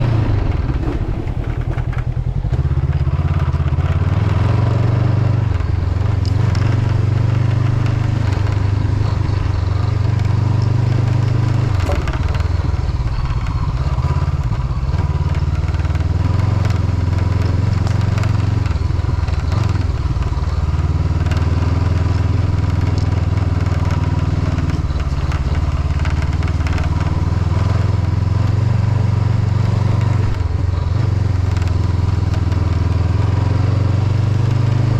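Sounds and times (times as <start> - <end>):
motorcycle engine running: 0.0 - 34.9
windshield rattling: 0.4 - 3.8, 6.7 - 16.2.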